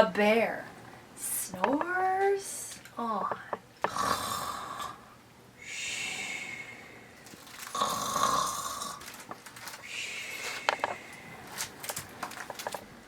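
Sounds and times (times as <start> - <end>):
woman imitating snoring: 3.8 - 5.0, 7.7 - 9.0.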